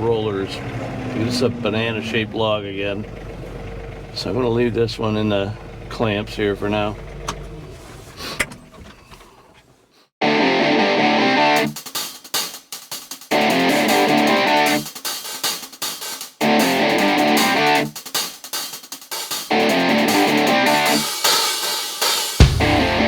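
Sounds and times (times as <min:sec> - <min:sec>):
background music with steady beat: 0:10.6 - 0:23.0.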